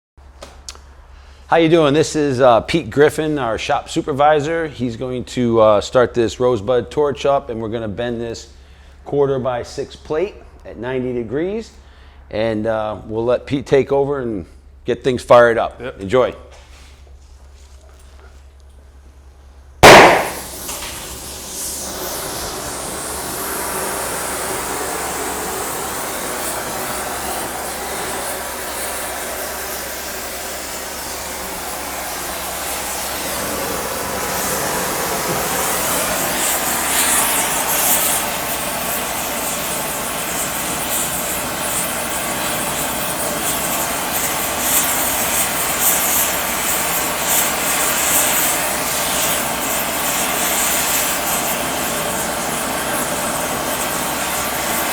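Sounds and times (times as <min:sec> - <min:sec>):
heating torch hissing: 0:19.8 - 0:54.9.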